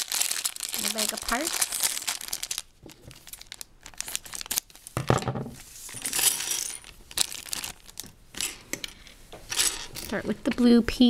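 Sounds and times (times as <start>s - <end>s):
plastic bag crinkling and tearing: 0.0s - 5.0s, 6.1s - 8.2s.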